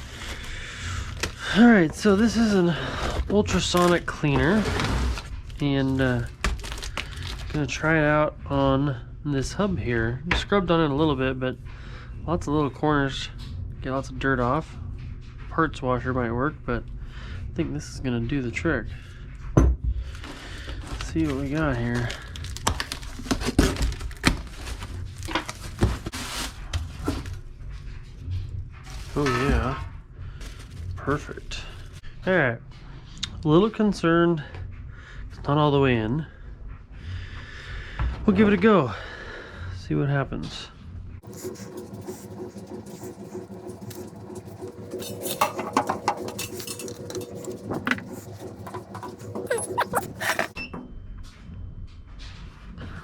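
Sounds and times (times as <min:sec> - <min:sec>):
ultrasonic cleaner humming: 0:41.2 - 0:50.6.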